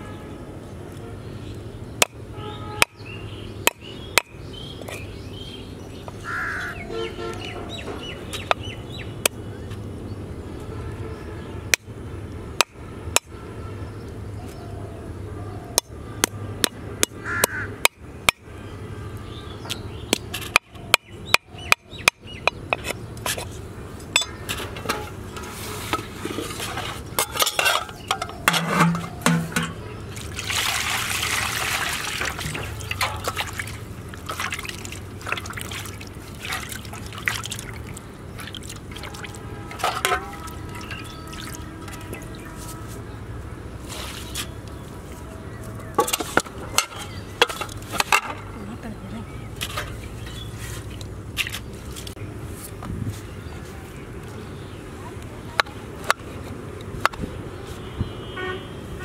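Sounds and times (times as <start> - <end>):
water pouring and trickling: 24.5 - 42.7.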